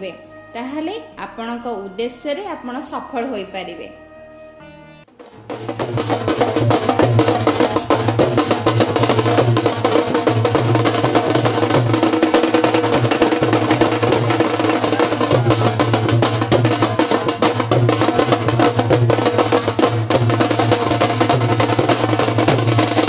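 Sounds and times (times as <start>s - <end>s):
music with fast percussion and bass: 5.1s - 23.0s.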